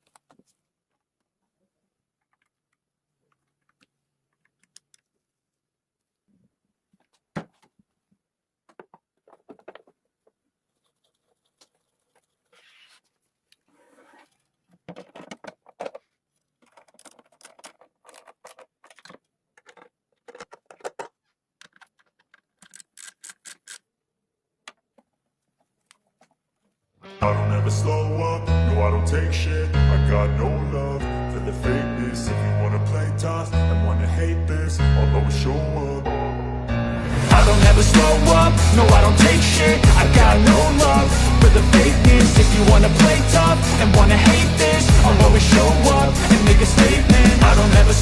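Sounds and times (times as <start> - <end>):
small clicks: 2.2 - 5.1, 16.6 - 23.9
small parts clattering: 8.7 - 10.4, 14.1 - 23.9
scratchy scraping: 10.7 - 15.2.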